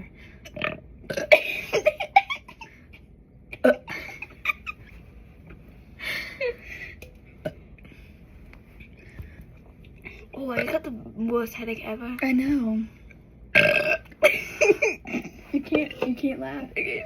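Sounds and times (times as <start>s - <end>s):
girls giggling: 1.3s - 2.7s, 3.8s - 5.0s, 14.2s - 15.5s.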